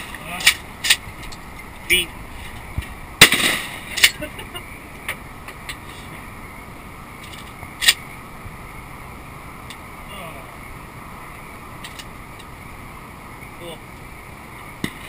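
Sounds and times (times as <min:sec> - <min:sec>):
sharp crack: 0:00.0 - 0:01.5, 0:02.8 - 0:04.4, 0:07.2 - 0:08.1, 0:14.8 - 0:15.0
shotgun shot with echo: 0:03.2 - 0:03.8.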